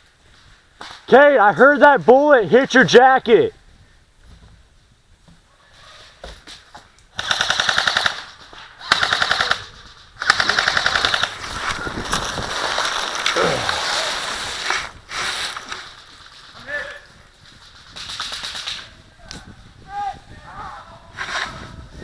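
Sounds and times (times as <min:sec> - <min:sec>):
airsoft guns firing full auto: 0:07.2 - 0:11.4, 0:17.9 - 0:18.8.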